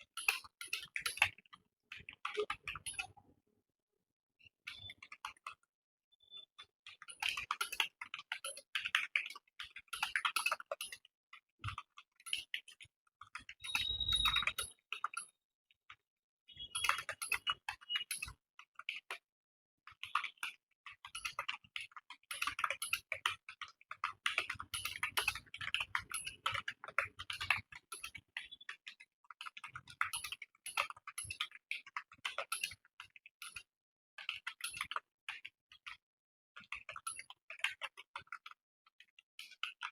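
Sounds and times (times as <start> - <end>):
fast typing on keyboard: 0.1 - 3.2, 6.4 - 15.3, 20.0 - 33.7.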